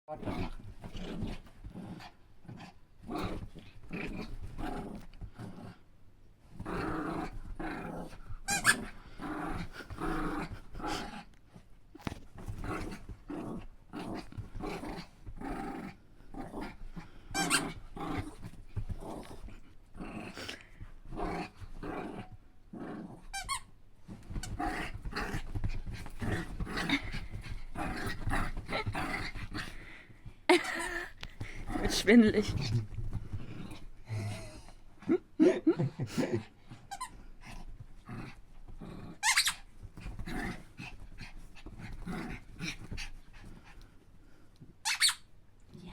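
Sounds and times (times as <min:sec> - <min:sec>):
dog squeaking: 0:39.2 - 0:39.6, 0:44.9 - 0:45.3.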